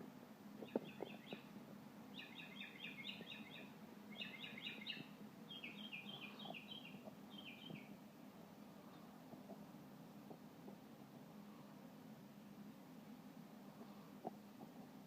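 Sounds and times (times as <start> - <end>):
bird chirping: 0.6 - 1.5, 2.1 - 8.0.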